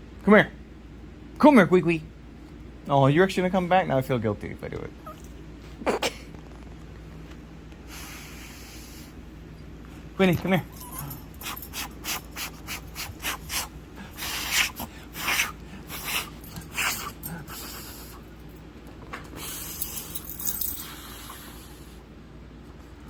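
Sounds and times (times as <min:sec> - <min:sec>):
puppy sniffing and snorting: 0:10.7 - 0:18.4.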